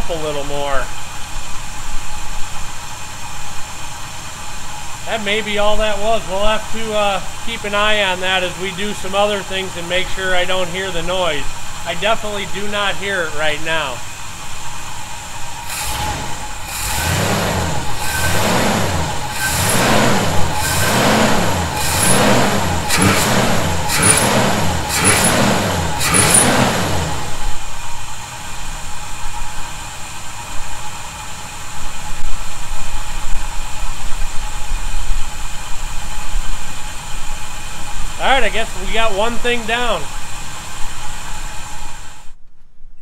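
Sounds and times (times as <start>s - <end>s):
pickup engine revving: 15.1s - 27.7s.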